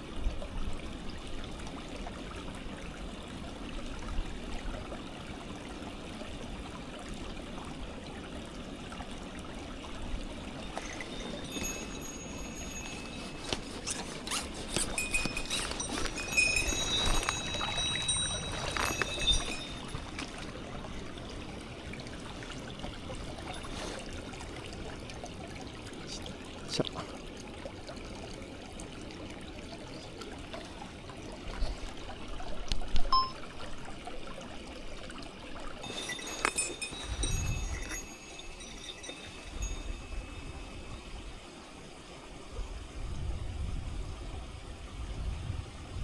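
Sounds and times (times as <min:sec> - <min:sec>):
stream water trickling: 0:00.0 - 0:46.0
thin high-pitched tones: 0:10.7 - 0:20.5, 0:33.1 - 0:33.5, 0:35.8 - 0:41.1.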